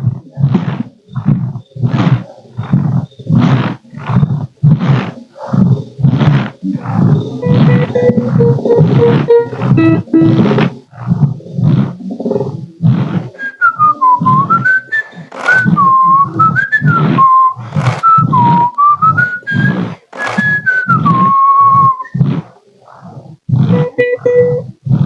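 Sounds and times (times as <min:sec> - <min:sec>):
steam puffing rhythm: 0:00.0 - 0:25.0
person whistling a tune: 0:13.4 - 0:22.2, 0:23.7 - 0:24.6.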